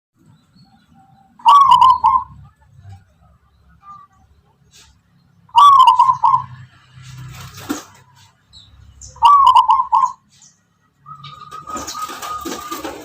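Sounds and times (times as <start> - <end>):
dove cooing: 0.6 - 3.4, 5.5 - 6.6, 9.2 - 10.4, 11.0 - 13.0.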